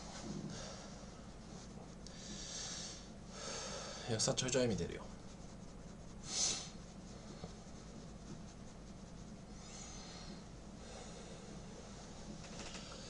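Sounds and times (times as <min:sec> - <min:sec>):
faint background hum: 0:00.0 - 0:13.0
person breathing: 0:00.4 - 0:01.2, 0:02.1 - 0:04.1, 0:09.6 - 0:12.1, 0:12.7 - 0:13.0.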